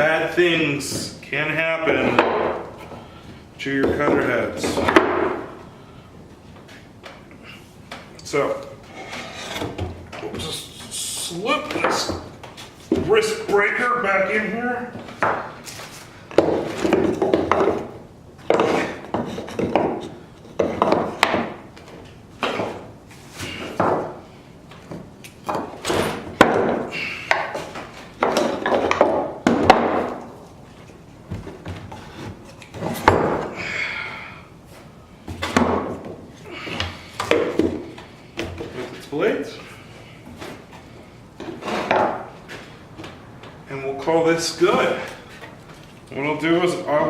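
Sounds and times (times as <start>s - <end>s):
scraping handling noise: 8.0s - 17.9s, 34.7s - 43.2s.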